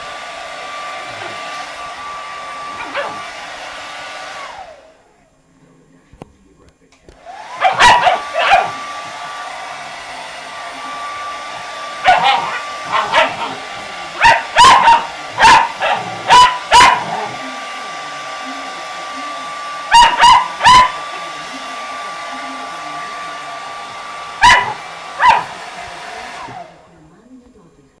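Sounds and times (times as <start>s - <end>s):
hair dryer running: 0.0s - 5.1s, 7.1s - 27.8s
puppy barking: 2.7s - 3.3s, 7.6s - 8.8s, 12.0s - 17.4s, 19.9s - 21.0s, 24.4s - 25.6s.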